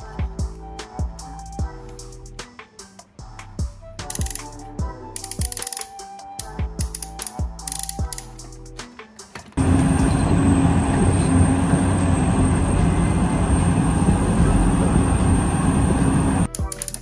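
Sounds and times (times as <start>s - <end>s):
mechanical running noise with whine: 9.6s - 16.5s.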